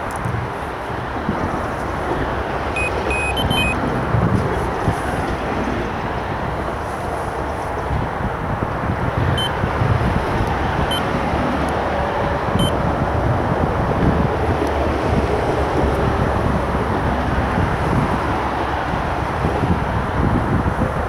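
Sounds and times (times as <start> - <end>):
road traffic rumble: 0.0 - 21.0
wind buffeting microphone: 0.0 - 21.0
short high beeps: 2.8 - 3.8.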